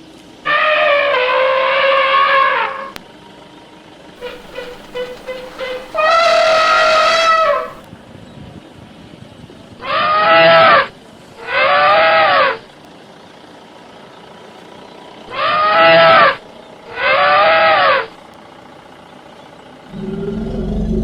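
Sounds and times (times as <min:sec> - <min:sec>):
elephant trumpeting: 0:04.2 - 0:07.8, 0:15.3 - 0:18.1, 0:19.9 - 0:21.0
low steady hum: 0:19.9 - 0:21.0.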